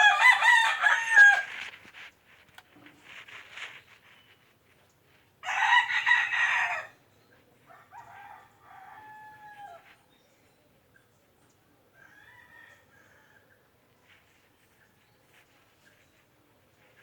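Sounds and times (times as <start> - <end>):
rooster crowing: 0.0 - 1.6, 5.4 - 7.0, 7.7 - 9.9, 12.0 - 13.5.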